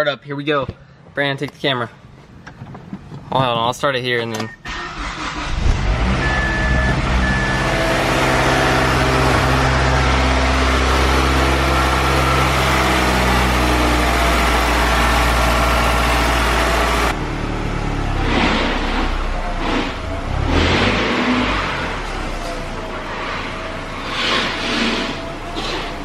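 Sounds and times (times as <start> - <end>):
car engine idling: 5.1 - 26.0
short electronic beeps: 6.1 - 7.8.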